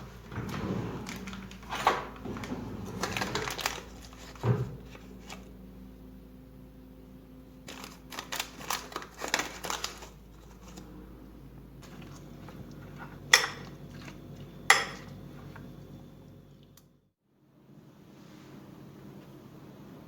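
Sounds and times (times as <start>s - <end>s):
kitchenware clattering: 13.3s - 14.1s, 14.7s - 15.2s.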